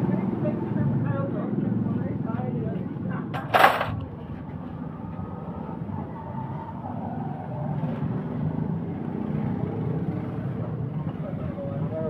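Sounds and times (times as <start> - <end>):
motor vehicles rumbling: 0.0 - 12.0.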